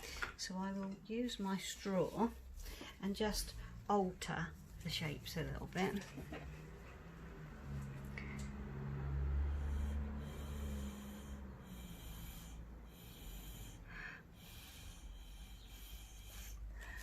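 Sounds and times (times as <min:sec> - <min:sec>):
breath puffs through a straw: 0:09.3 - 0:17.0.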